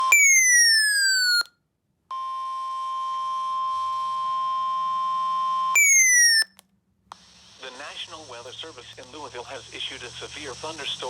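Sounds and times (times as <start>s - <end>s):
falling electronic tone: 0.0s - 1.5s, 5.8s - 6.5s.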